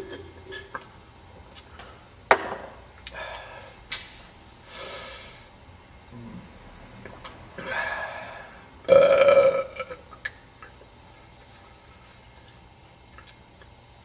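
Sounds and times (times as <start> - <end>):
man breathing out hard: 7.6 - 8.7
man burping loudly: 8.9 - 10.0.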